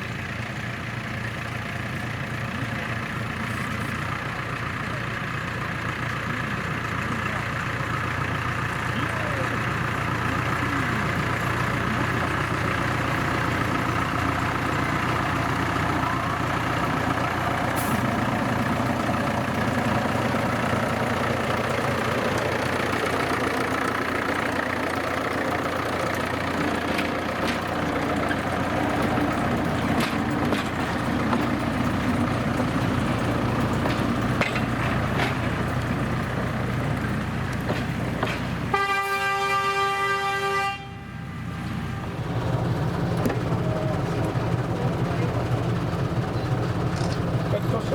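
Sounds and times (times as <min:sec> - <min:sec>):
diesel locomotive engine droning: 0:00.0 - 0:47.9
locomotive horn: 0:38.6 - 0:42.9.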